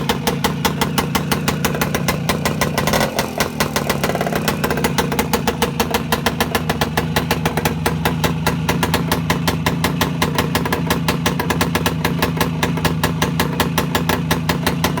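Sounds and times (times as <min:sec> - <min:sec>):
motorcycle engine idling: 0:00.0 - 0:15.0.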